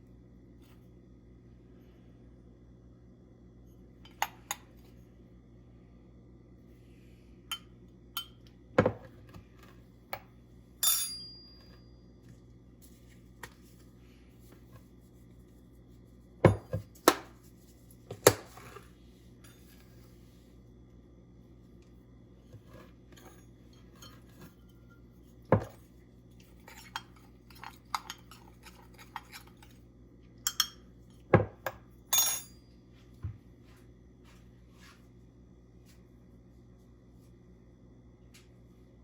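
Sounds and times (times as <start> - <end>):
utensils tapping and clinking: 26.6 - 29.7, 30.5 - 30.8.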